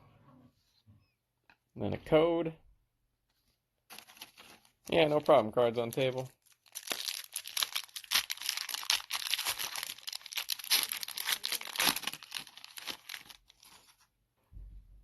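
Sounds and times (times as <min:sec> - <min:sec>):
foil wrapper crinkling: 0:03.9 - 0:14.1.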